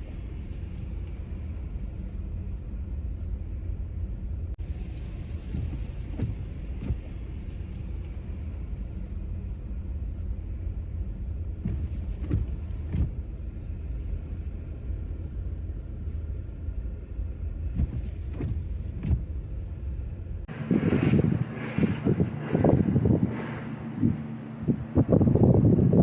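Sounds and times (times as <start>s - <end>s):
road traffic rumble: 0.0s - 26.0s
wind buffeting microphone: 4.4s - 8.8s, 17.6s - 26.0s.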